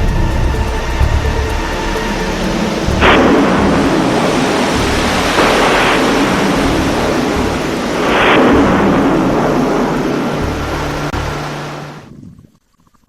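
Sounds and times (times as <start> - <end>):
crackling surges: 0.0 - 13.0
rocket launch roar: 2.0 - 12.0.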